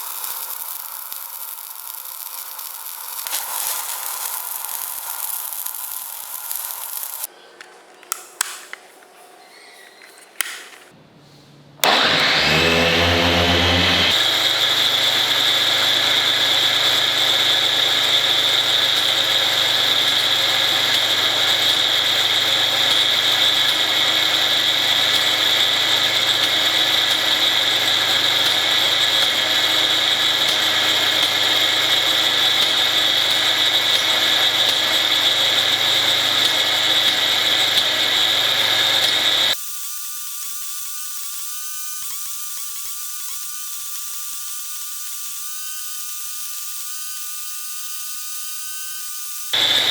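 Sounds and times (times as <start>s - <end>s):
angle grinders whining: 11.8s - 39.6s, 49.6s - 49.9s
quiet wavering whir: 11.8s - 39.6s.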